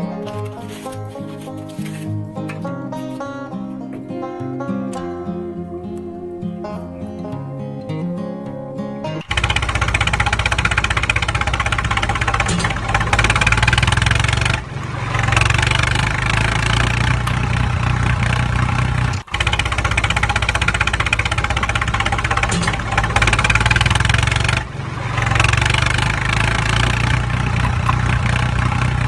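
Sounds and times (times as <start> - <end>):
tractor engine chugging: 9.2 - 29.0.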